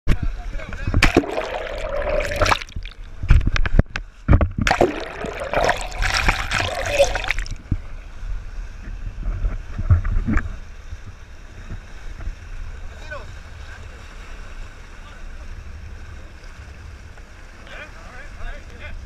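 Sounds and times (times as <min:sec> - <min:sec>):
water splashing: 0:00.9 - 0:03.6, 0:04.6 - 0:07.7
wind rumble on microphone: 0:07.5 - 0:14.0.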